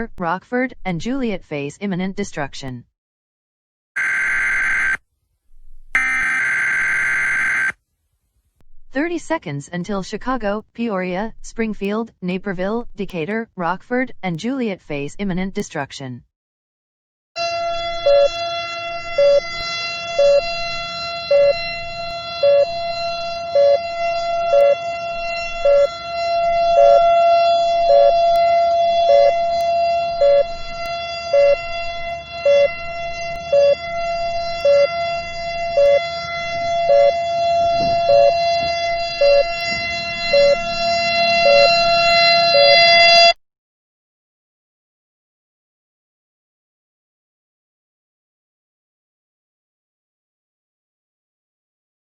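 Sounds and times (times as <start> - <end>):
siren steady pitch: 4.0 - 5.0, 5.9 - 7.8, 17.4 - 43.4.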